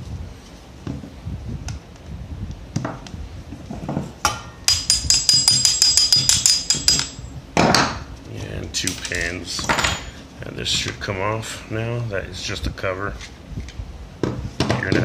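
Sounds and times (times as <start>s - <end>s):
sharp metallic taps: 4.3s - 7.3s
hammer knocking on pin punch: 4.3s - 7.9s.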